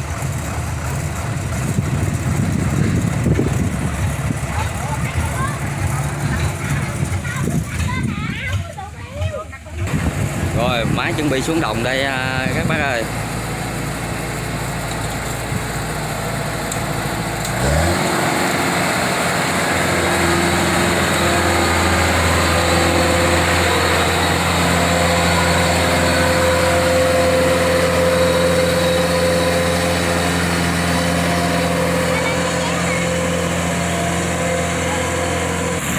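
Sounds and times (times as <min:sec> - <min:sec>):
combine harvester diesel engine: 0:00.0 - 0:35.9.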